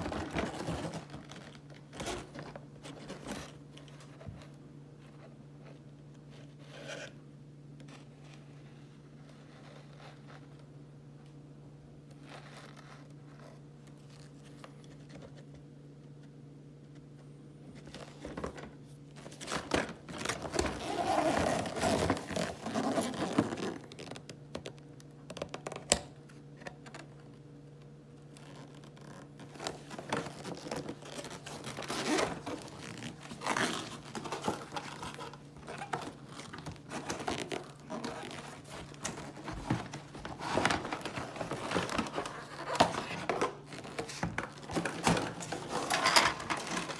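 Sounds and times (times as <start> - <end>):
packaging rustling and tearing: 0.0 - 4.2, 19.2 - 24.3, 28.2 - 46.9.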